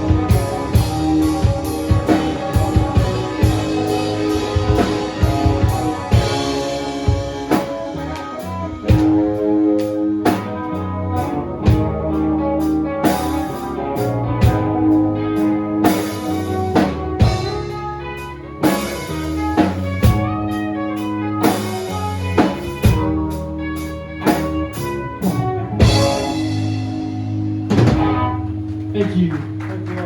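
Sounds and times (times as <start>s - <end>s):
heavy drum hit: 0.0s - 8.1s, 25.8s - 28.9s
band playing blues-rock: 0.0s - 30.0s.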